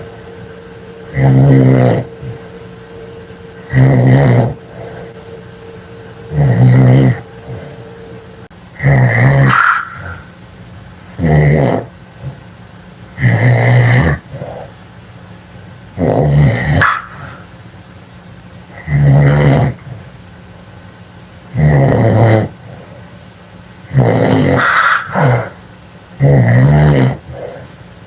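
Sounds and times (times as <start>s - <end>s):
quiet breathing: 0.0s - 8.5s
loud rasping snores: 0.8s - 2.7s, 3.6s - 5.2s, 6.0s - 8.0s, 8.8s - 10.3s, 11.2s - 12.4s, 13.2s - 14.7s, 16.0s - 17.4s, 18.8s - 20.0s, 21.5s - 22.9s, 23.9s - 25.6s, 26.2s - 27.7s.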